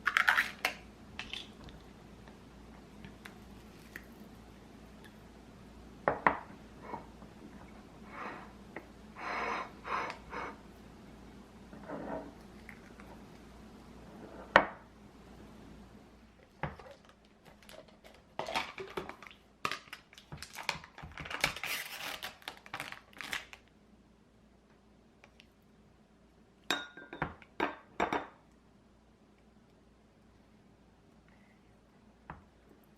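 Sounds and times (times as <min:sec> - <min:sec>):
dishes clinking: 0:26.7 - 0:28.4.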